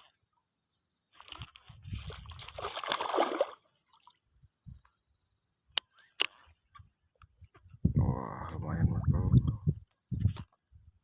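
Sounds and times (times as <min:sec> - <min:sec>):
water splashing and rustling: 0:00.0 - 0:00.4, 0:01.0 - 0:04.6.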